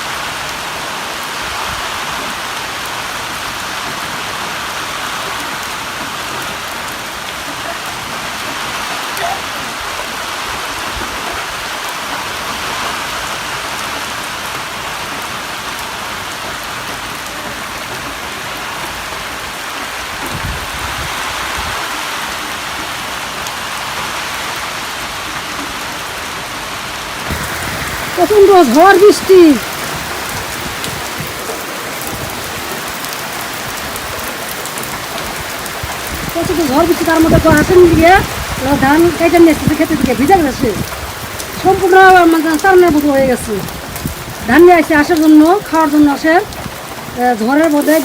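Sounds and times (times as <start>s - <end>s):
heavy rain pouring: 0.0s - 48.0s
low thunder rumble: 27.2s - 32.9s.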